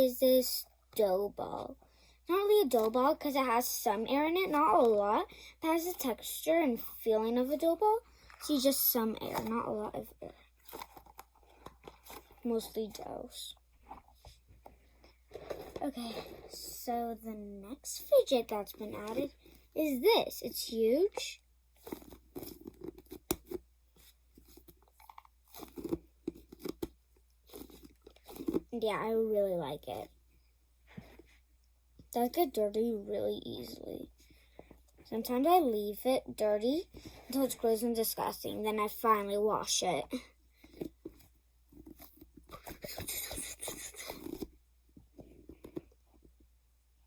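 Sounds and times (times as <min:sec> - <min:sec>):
fidget toy crackling and crunching: 0:02.6 - 0:13.6, 0:20.3 - 0:29.2, 0:40.6 - 0:44.6.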